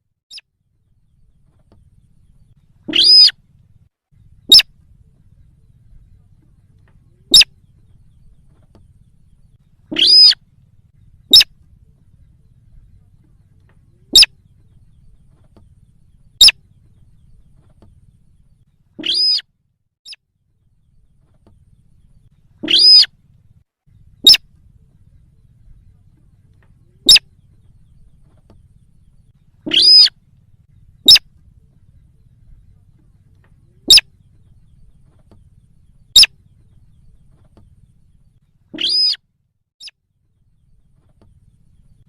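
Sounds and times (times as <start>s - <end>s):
recorded bird calls: 0.0s - 42.0s
longer harsh bird call: 2.8s - 3.4s, 9.8s - 10.4s, 22.6s - 23.1s, 29.6s - 30.2s, 38.8s - 39.2s.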